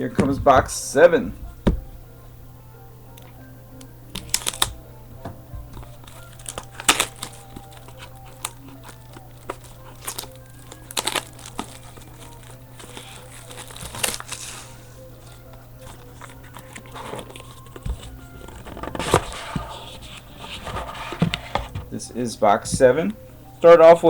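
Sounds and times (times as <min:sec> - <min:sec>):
faint background music: 0:00.0 - 0:24.0
wrapping crinkling and snapping: 0:03.1 - 0:04.9, 0:05.6 - 0:22.0.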